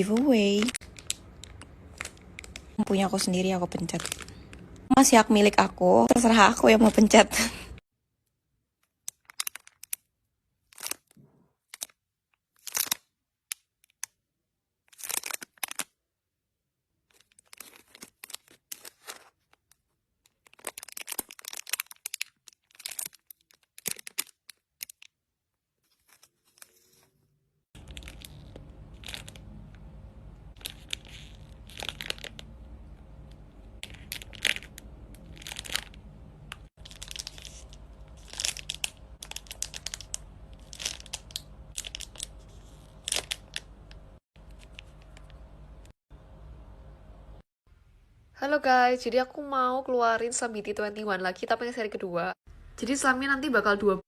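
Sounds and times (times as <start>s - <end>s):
plastic packaging crinkling: 0.0s - 4.8s, 9.0s - 14.1s, 14.9s - 16.0s, 17.0s - 25.2s, 27.8s - 45.4s
steady low hum: 27.8s - 48.4s.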